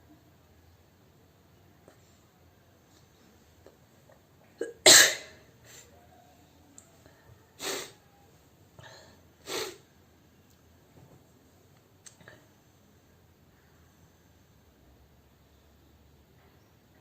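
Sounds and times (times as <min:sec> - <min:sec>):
woman sneezing: 0:04.9 - 0:05.8
breath bursts through nose: 0:09.4 - 0:09.8.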